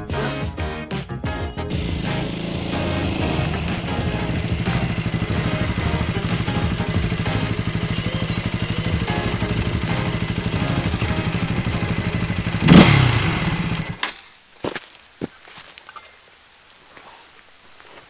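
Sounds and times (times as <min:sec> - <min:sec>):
engine idling: 0:01.7 - 0:14.0.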